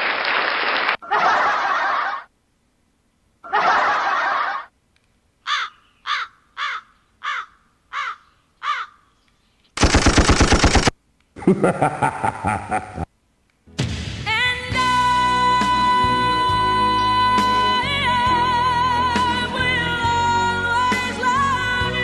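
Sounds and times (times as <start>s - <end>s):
crow cawing: 5.4s - 9.2s
loud rapid buzzing pulse: 9.8s - 10.9s
short bursts of noise: 9.8s - 11.0s.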